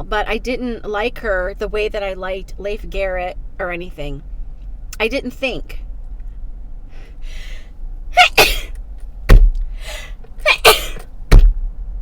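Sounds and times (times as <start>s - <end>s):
woman sneezing: 8.2s - 8.7s, 9.9s - 11.0s.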